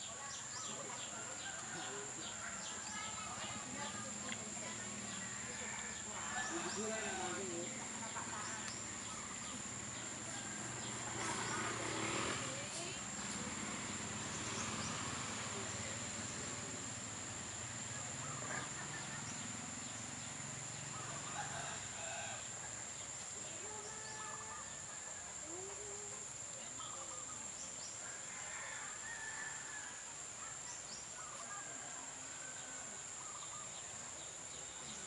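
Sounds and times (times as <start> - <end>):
insect drone: 0.0 - 35.0
bird calls: 30.4 - 35.0.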